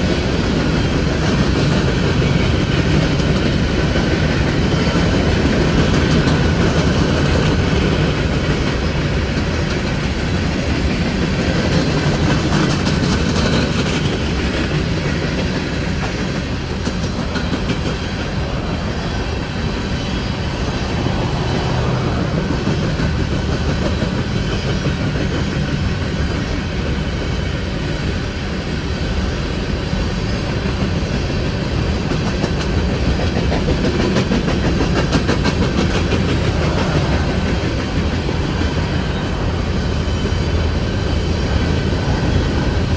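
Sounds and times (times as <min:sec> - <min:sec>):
freight cars rolling past: 0:00.0 - 0:27.7, 0:33.8 - 0:42.9
steel wheels clacking over rail joints: 0:00.0 - 0:28.2.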